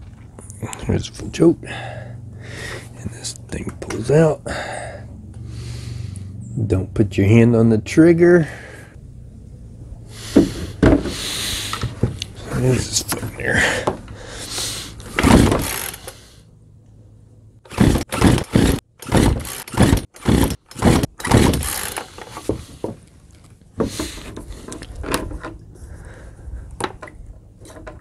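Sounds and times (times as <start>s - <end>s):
chainsaw starter cord pulls: 15.0s - 16.3s, 17.7s - 22.8s.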